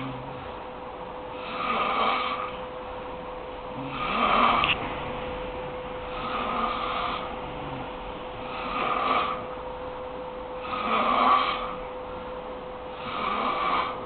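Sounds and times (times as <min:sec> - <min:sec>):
heavy snoring: 0:00.0 - 0:00.6, 0:01.3 - 0:02.6, 0:03.7 - 0:04.8, 0:06.1 - 0:09.6, 0:10.6 - 0:11.9, 0:12.9 - 0:14.0.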